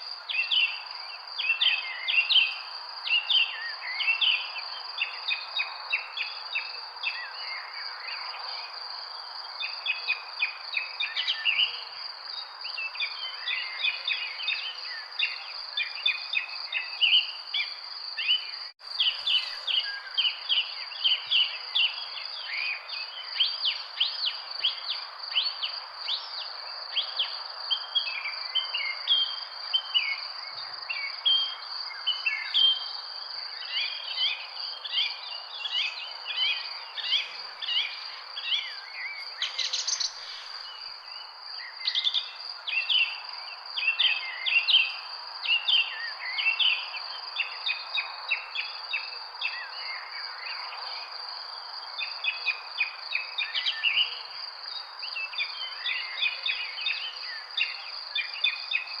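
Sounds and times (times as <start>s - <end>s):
birds chirping and twittering: 0.1s - 59.0s
high insect drone: 18.8s - 58.9s.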